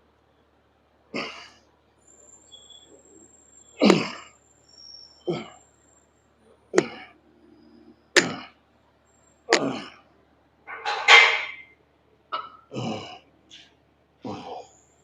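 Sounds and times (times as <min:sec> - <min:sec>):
man grunting forceful breaths: 0:14.2 - 0:14.7.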